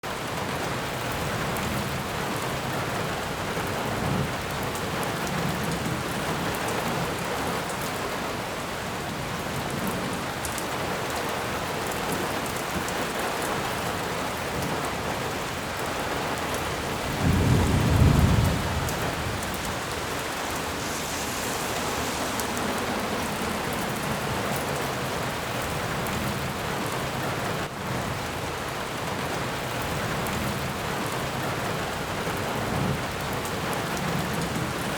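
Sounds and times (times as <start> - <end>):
steady rain: 0.0 - 34.9
low rumble: 17.2 - 27.2.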